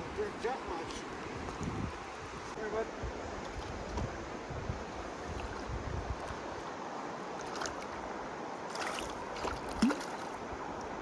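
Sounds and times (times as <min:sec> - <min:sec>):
wind buffeting microphone: 0:00.0 - 0:06.6
river water flowing: 0:00.0 - 0:11.0.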